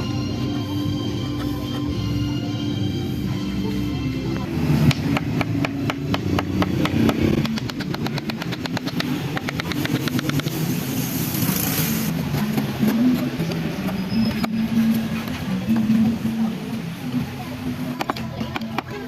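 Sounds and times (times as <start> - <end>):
steady hiss: 10.3 - 12.8.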